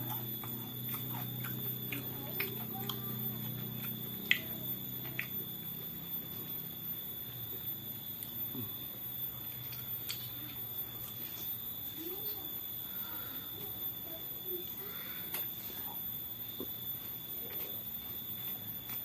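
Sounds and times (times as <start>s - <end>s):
chewing clicks: 0.0s - 6.7s
electrical hum: 0.0s - 19.0s.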